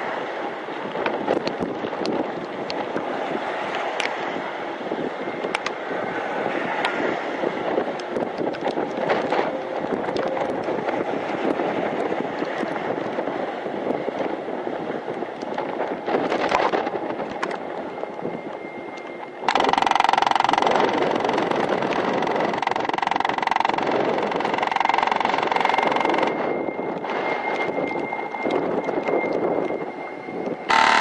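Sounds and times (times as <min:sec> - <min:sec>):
wind on microphone: 0:00.0 - 0:31.0
loud electrical buzz: 0:19.5 - 0:26.4, 0:30.7 - 0:31.0.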